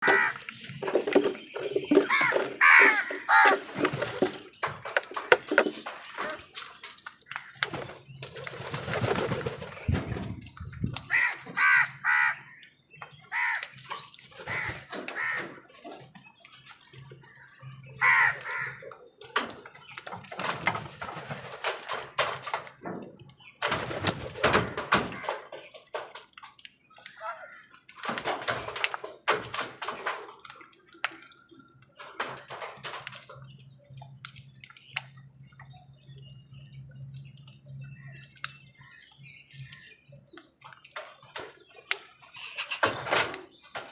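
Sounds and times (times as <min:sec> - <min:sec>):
crows cawing: 0:00.0 - 0:00.5, 0:02.0 - 0:03.7, 0:11.1 - 0:12.6, 0:13.3 - 0:13.8, 0:14.4 - 0:15.7, 0:18.0 - 0:19.0
other birds calling: 0:00.0 - 0:22.8, 0:23.4 - 0:43.9.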